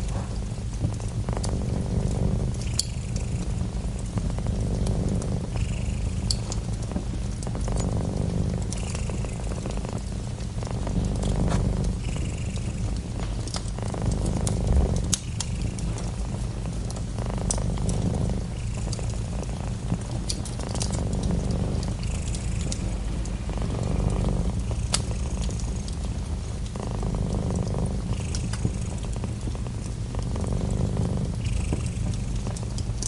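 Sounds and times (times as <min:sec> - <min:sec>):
cat purring: 0:00.0 - 0:33.0
wood fire crackling: 0:00.0 - 0:33.0.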